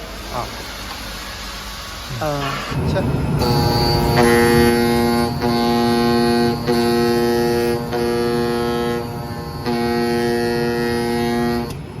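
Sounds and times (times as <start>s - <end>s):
oscillating knife buzzing: 3.4s - 11.7s.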